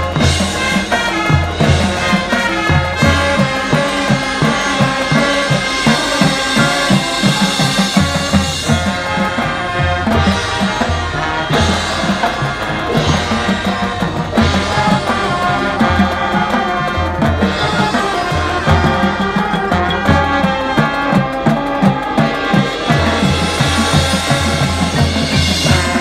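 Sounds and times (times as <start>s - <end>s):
brass: 0.0s - 26.0s
drums: 0.0s - 26.0s.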